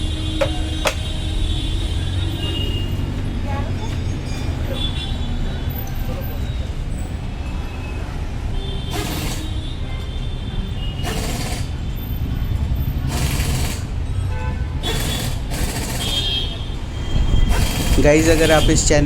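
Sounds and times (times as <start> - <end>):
traffic rumble: 0.0 - 9.4, 10.6 - 19.0
hissing surge of traffic: 16.8 - 19.0.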